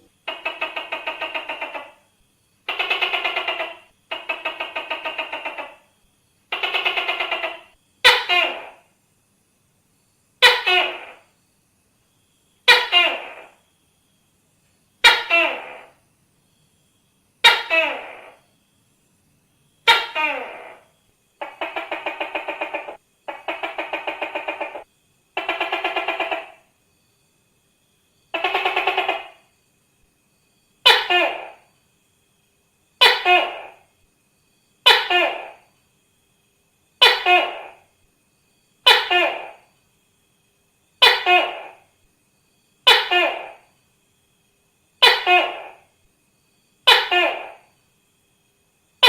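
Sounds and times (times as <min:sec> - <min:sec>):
gecko chattering: 0:00.0 - 0:08.9, 0:10.4 - 0:11.3, 0:12.6 - 0:13.6, 0:15.0 - 0:16.0, 0:17.4 - 0:18.5, 0:19.8 - 0:26.7, 0:28.3 - 0:29.5, 0:30.8 - 0:31.7, 0:33.0 - 0:33.9, 0:34.8 - 0:35.7, 0:37.0 - 0:37.9, 0:38.8 - 0:39.7, 0:41.0 - 0:41.9, 0:42.8 - 0:43.7, 0:45.0 - 0:45.9.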